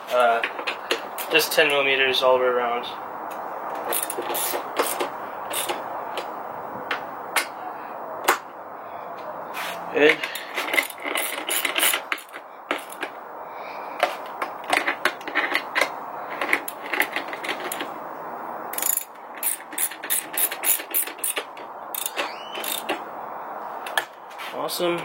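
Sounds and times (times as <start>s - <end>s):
ratchet wrench clicking: 3.9s - 5.8s, 10.7s - 13.0s, 18.7s - 23.0s.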